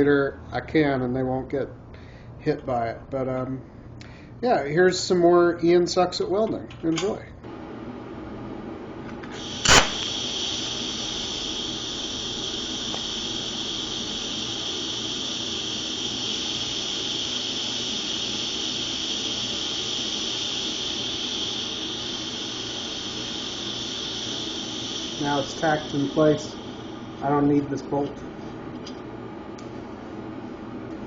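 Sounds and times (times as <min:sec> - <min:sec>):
welding arc buzzing hiss: 0:09.1 - 0:29.0
welding arc crackle: 0:09.4 - 0:27.7.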